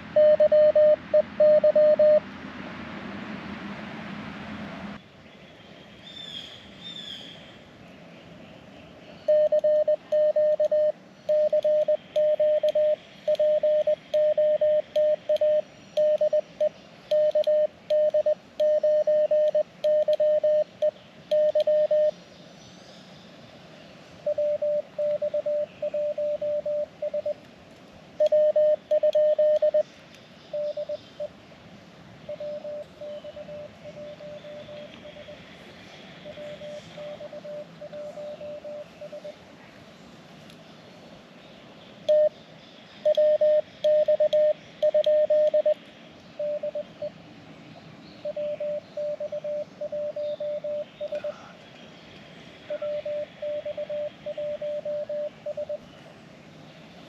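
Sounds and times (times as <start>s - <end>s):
morse code tone: 0.0s - 2.2s, 9.3s - 22.2s, 24.2s - 27.4s, 28.2s - 29.9s, 30.5s - 31.3s, 32.3s - 35.4s, 36.2s - 39.4s, 42.1s - 42.3s, 43.0s - 45.8s, 46.4s - 47.1s, 48.2s - 51.3s, 52.7s - 55.9s.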